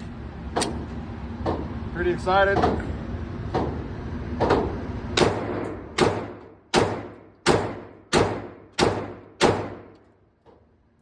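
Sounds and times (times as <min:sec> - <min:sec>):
pistol shots echoing: 0:05.2 - 0:10.0.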